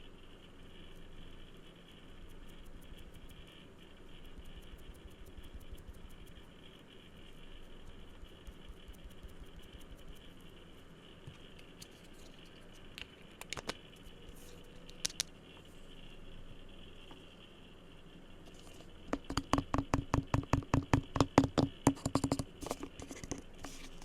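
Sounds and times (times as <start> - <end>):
fingers scratching lightly: 7.3 - 10.8, 18.5 - 24.0
fast taps with ringing note: 19.2 - 22.5.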